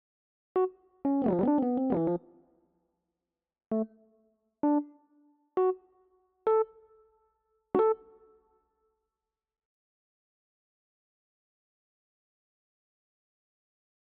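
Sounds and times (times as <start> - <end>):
synthesized keyboard notes: 0.6 - 2.3, 3.7 - 3.9, 4.6 - 4.9, 5.6 - 5.8, 6.5 - 6.8, 7.8 - 8.2.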